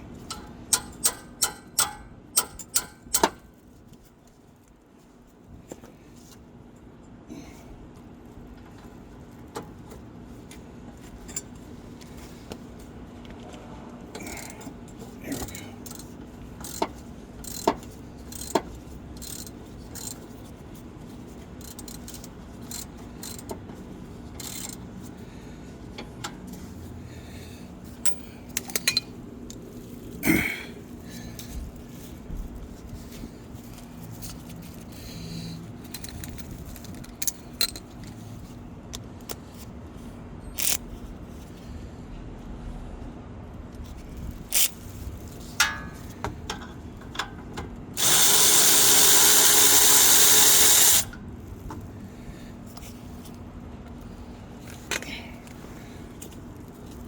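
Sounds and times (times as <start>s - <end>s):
steady low hum: 0.0s - 57.0s
metallic clinks of wrenches: 0.2s - 3.5s, 14.2s - 20.3s, 21.6s - 23.5s, 24.4s - 24.8s, 28.0s - 29.2s, 35.8s - 38.1s.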